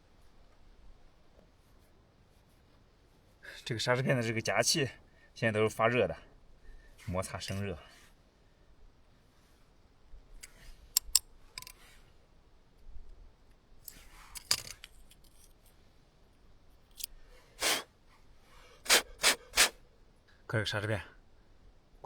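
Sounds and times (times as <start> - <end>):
small metallic clicks: 10.4 - 11.8, 13.8 - 15.8, 16.8 - 17.2.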